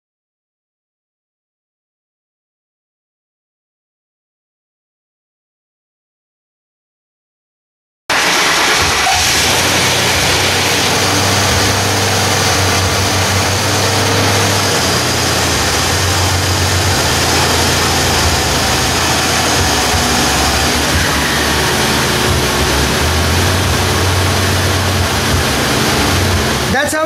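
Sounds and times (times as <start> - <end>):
car engine idling: 8.1 - 27.0.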